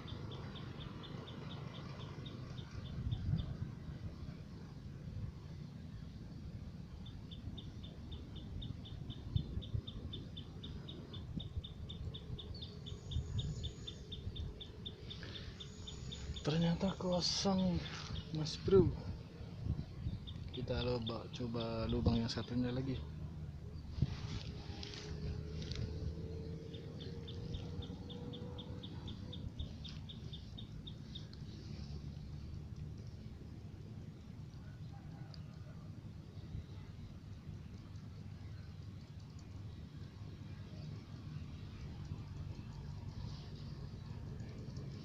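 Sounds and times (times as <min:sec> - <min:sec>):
steady low rumble: 0:00.0 - 0:35.0
small bird chirping: 0:07.0 - 0:18.8, 0:23.8 - 0:33.6.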